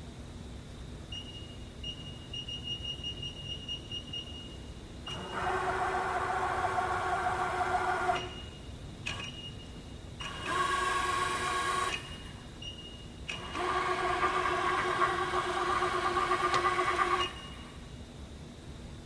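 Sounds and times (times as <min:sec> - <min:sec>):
milling machine motor whine: 0:05.1 - 0:09.4, 0:10.2 - 0:12.6, 0:13.2 - 0:18.0.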